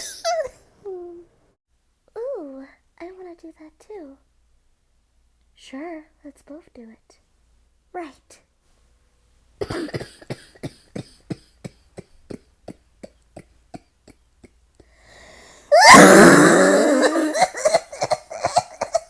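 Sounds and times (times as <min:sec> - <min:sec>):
throat clearing: 0:00.0 - 0:00.5, 0:09.6 - 0:14.6
women coughing: 0:00.0 - 0:00.6, 0:09.6 - 0:14.6, 0:15.7 - 0:19.0.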